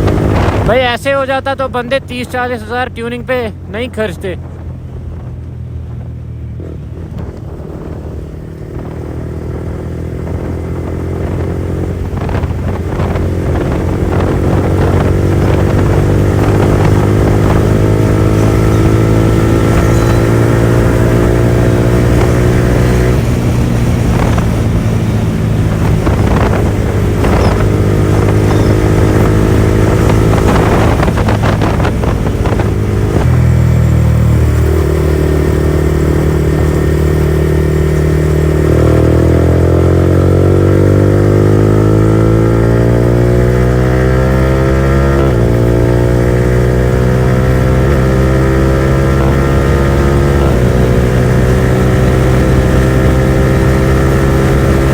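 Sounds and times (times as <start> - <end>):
motorcycle engine at high speed: 0.0 - 54.9.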